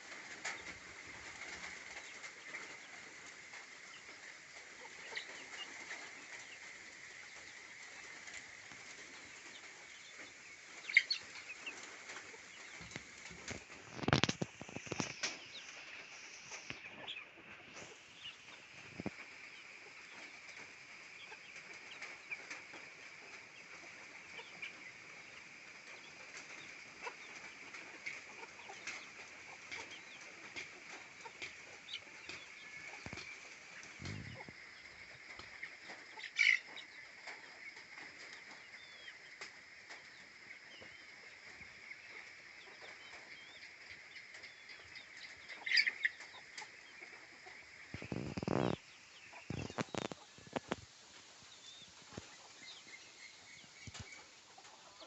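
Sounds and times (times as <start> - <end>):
chickens clucking softly: 0.0 - 55.0
wing flapping: 10.6 - 18.1, 27.4 - 36.0.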